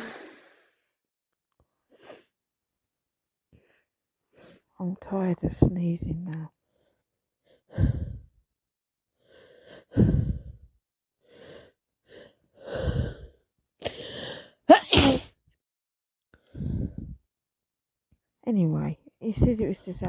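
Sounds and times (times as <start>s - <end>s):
woman catching breaths: 9.2s - 10.7s
woman sneezing: 14.7s - 15.4s.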